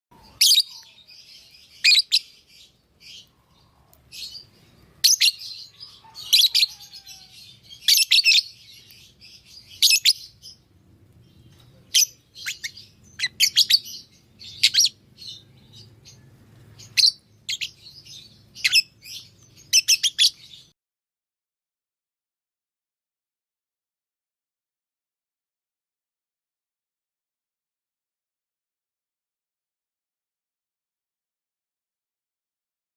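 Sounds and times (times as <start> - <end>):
parrot chirping: 0.2 - 10.6, 11.3 - 20.6.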